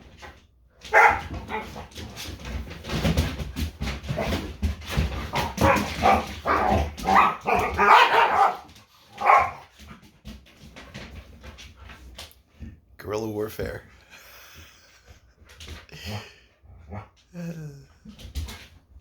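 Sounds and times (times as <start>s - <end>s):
dog barking: 0.9s - 1.8s, 5.4s - 9.6s.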